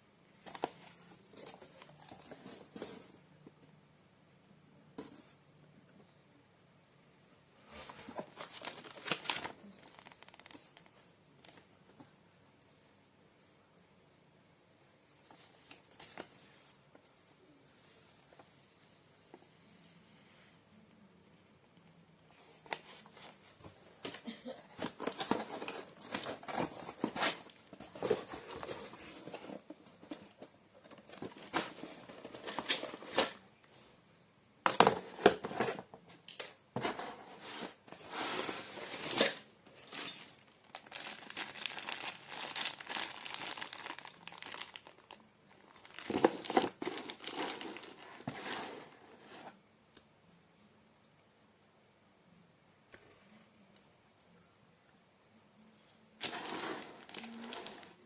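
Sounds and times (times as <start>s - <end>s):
crinkling and rustling handling: 0.4s - 3.2s, 7.8s - 12.1s, 15.2s - 17.1s, 22.3s - 33.4s, 34.7s - 49.6s, 56.2s - 58.0s.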